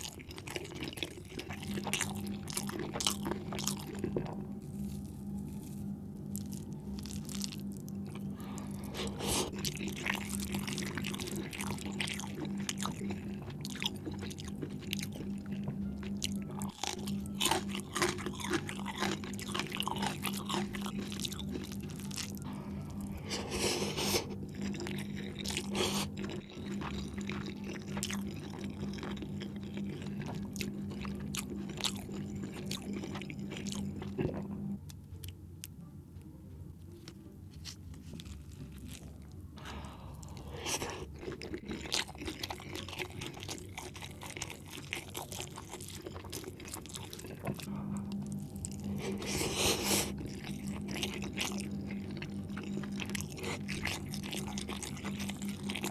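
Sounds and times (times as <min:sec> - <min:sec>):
close chewing with wet clicks: 0:00.0 - 0:04.4, 0:09.4 - 0:22.4, 0:24.5 - 0:35.7, 0:40.6 - 0:49.4, 0:50.0 - 0:55.9
steady low hum: 0:00.0 - 0:55.9.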